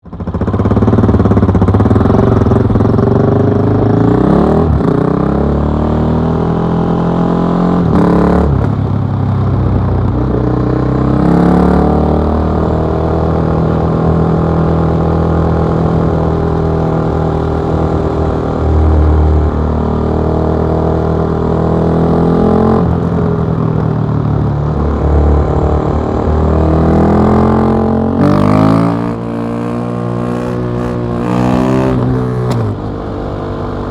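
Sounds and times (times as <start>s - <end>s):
motorcycle engine accelerating: 0.0s - 33.9s.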